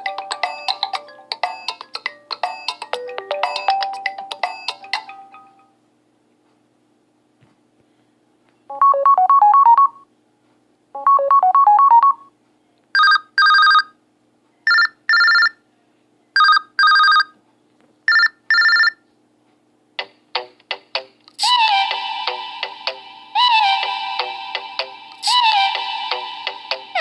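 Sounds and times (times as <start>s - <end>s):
telephone ring tone: 0.0s - 5.7s, 8.7s - 10.0s, 11.0s - 12.3s, 13.0s - 13.9s, 14.7s - 15.6s, 16.4s - 17.4s, 18.1s - 19.0s
smartphone ringtone melody: 0.0s - 5.8s, 8.7s - 10.0s, 11.0s - 12.2s, 18.1s - 19.0s, 21.9s - 27.0s.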